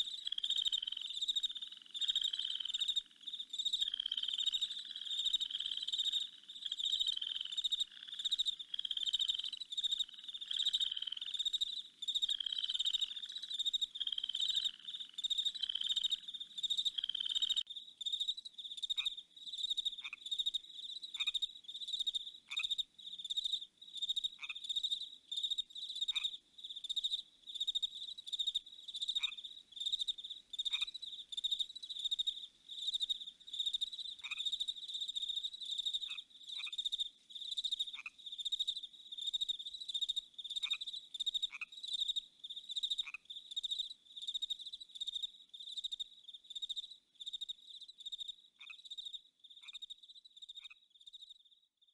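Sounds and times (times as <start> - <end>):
frogs calling: 0.0 - 17.7
crickets chirping: 0.0 - 50.5.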